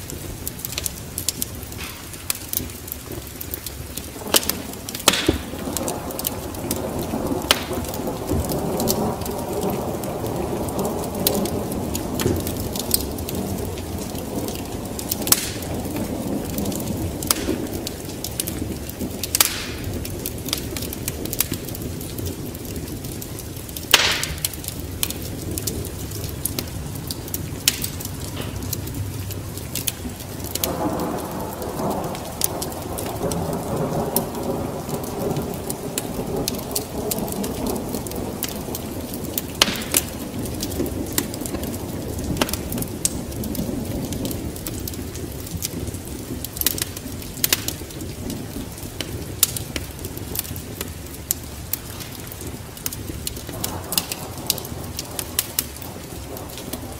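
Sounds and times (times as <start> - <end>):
rolling thunder: 0.0 - 56.9
steady rain: 0.0 - 56.9
wood fire crackling: 0.0 - 56.9.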